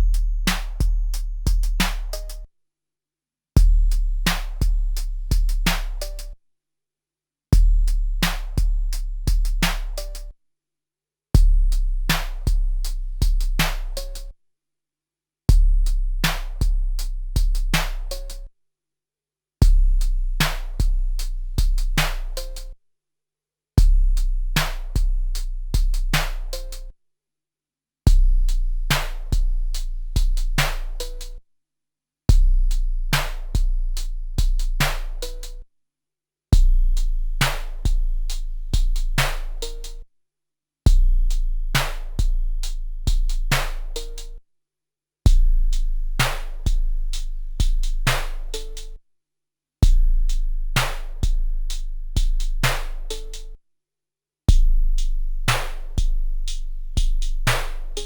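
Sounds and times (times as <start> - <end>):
drum machine beat: 0.0 - 2.4, 8.3 - 10.2, 43.1 - 44.3, 52.2 - 53.5.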